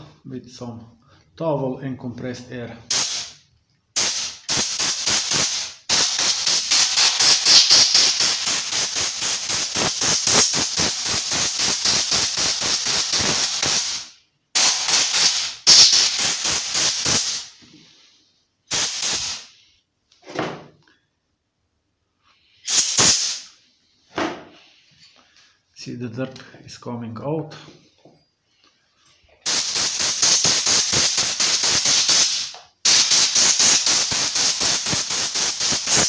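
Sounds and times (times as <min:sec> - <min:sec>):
compressed air blowgun hissing: 0:02.9 - 0:03.3, 0:04.0 - 0:17.5, 0:18.7 - 0:19.6, 0:22.6 - 0:23.5, 0:29.4 - 0:36.0.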